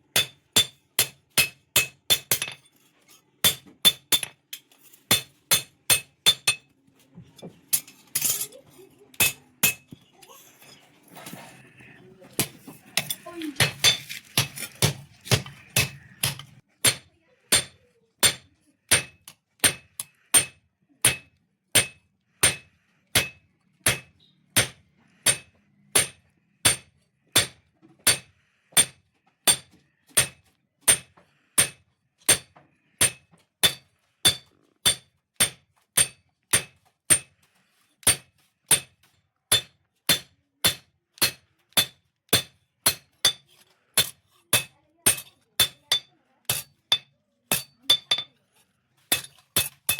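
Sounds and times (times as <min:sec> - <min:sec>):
hammer striking steel on anvil: 0:00.1 - 0:02.7, 0:03.4 - 0:06.6, 0:09.2 - 0:09.9, 0:12.4 - 0:37.3, 0:38.0 - 0:48.4, 0:49.1 - 0:49.9.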